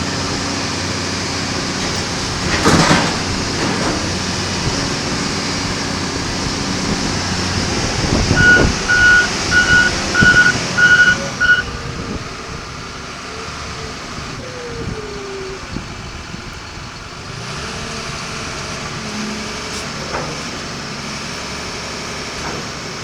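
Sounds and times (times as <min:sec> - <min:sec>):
diesel engine running: 0:00.0 - 0:23.0
backup alarm beeping: 0:08.4 - 0:11.8.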